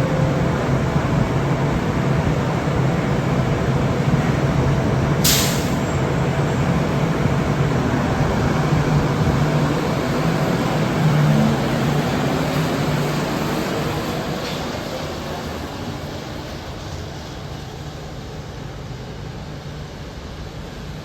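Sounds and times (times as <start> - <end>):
light rail train droning: 0.0 - 21.0
sharp hiss of air: 5.2 - 5.9.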